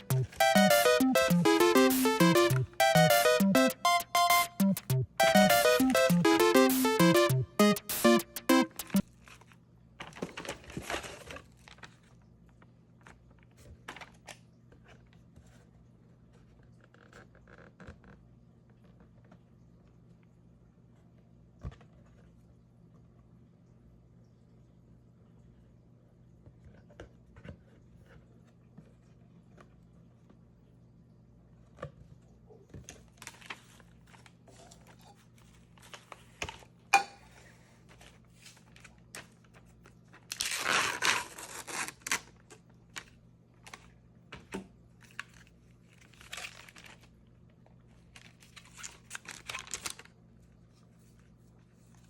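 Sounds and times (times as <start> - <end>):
wrapping tearing: 40.3 - 42.5, 46.0 - 47.1, 48.2 - 50.1
packaging clicks and crinkles: 48.1 - 50.1.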